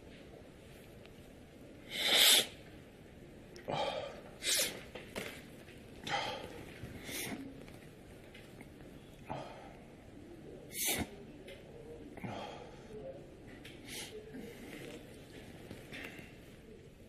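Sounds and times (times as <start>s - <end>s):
person sneezing: 10.7s - 11.2s
person gasping breaths: 12.2s - 13.0s.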